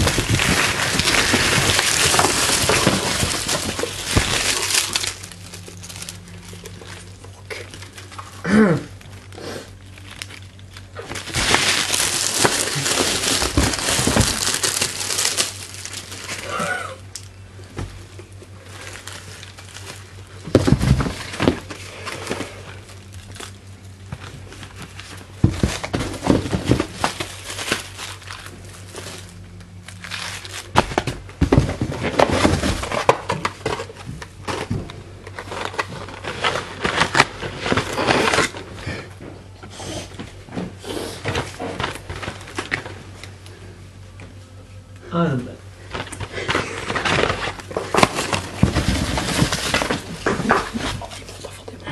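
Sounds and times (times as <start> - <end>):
items knocking: 0.0 - 6.1, 11.0 - 16.8, 20.4 - 22.8, 25.3 - 28.2, 30.7 - 39.4, 45.9 - 51.3
packaging crinkling: 0.0 - 39.1, 40.8 - 43.5, 45.8 - 51.9
faint low hum: 0.0 - 51.9.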